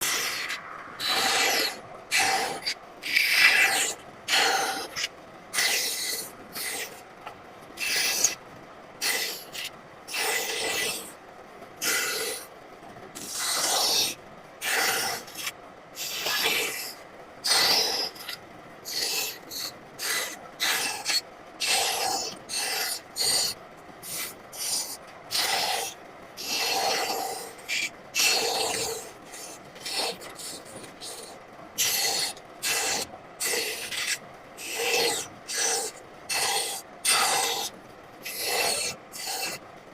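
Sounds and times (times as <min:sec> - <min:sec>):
hand tool rasping on wood: 0:00.0 - 0:07.0, 0:07.8 - 0:08.4, 0:09.0 - 0:11.1, 0:11.8 - 0:12.4, 0:13.2 - 0:39.6.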